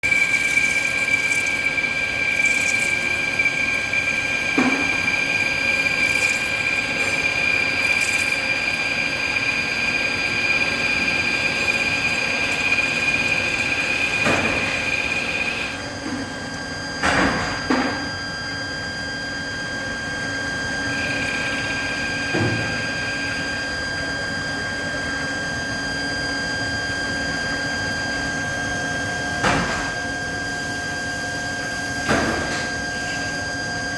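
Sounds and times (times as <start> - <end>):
machine hiss: 0.0 - 16.0, 19.9 - 24.2
lathe high whine: 0.0 - 33.9.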